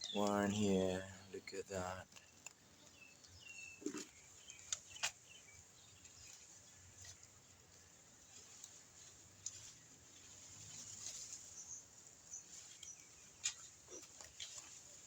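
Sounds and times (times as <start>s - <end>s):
faint bird chirps: 0.0s - 7.5s
soft clicks and rustles: 2.0s - 15.0s.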